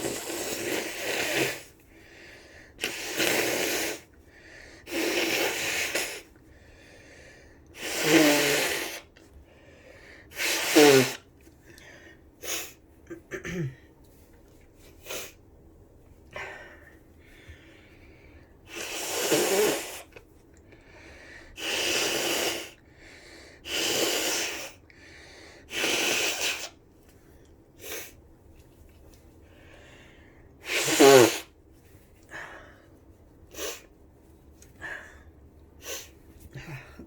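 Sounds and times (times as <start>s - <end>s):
person blowing nose: 0.0s - 1.8s, 2.8s - 4.2s, 4.8s - 6.3s, 7.8s - 9.2s, 10.3s - 11.3s, 12.4s - 12.8s, 15.0s - 15.4s, 18.7s - 20.2s, 21.6s - 22.8s, 23.6s - 24.8s, 25.7s - 26.8s, 27.8s - 28.2s, 30.6s - 31.6s, 33.5s - 33.9s, 35.8s - 36.1s
person sniffing: 0.0s - 4.2s, 4.8s - 6.3s, 7.8s - 9.1s, 10.3s - 11.3s, 14.9s - 15.4s, 18.7s - 20.2s, 21.6s - 22.8s, 23.6s - 24.8s, 25.6s - 26.8s, 30.6s - 31.5s, 33.5s - 33.9s, 35.8s - 36.9s
person sneezing: 10.3s - 11.3s, 30.6s - 31.5s.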